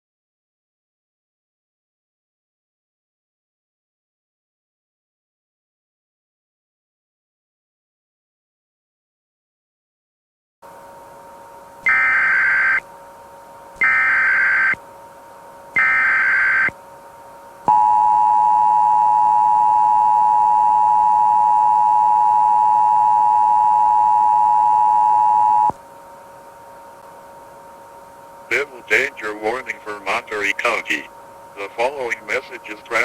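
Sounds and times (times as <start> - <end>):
faint steady drone: 10.6 - 33.0.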